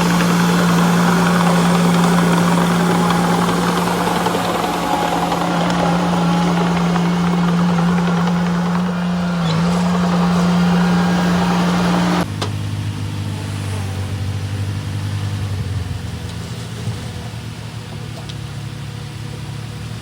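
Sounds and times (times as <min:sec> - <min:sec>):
diesel engine running: 0:00.0 - 0:17.5.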